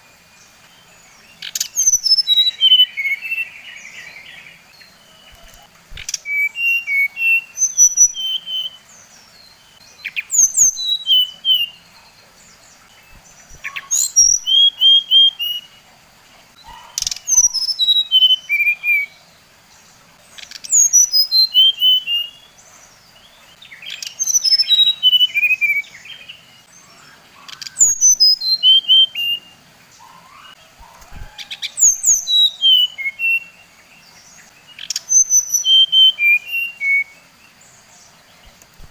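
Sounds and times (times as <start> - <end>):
songbird whistled phrase: 5.2 - 8.8, 13.6 - 15.7, 16.6 - 19.1, 20.7 - 22.4, 30.1 - 33.6, 34.9 - 37.2.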